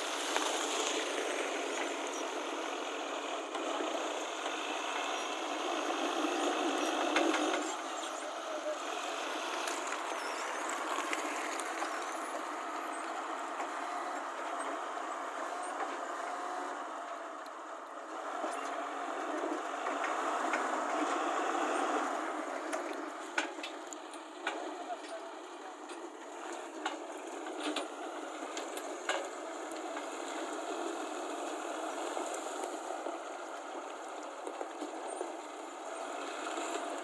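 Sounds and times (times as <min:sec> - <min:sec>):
heavy vehicle engine running: 0:00.0 - 0:37.0.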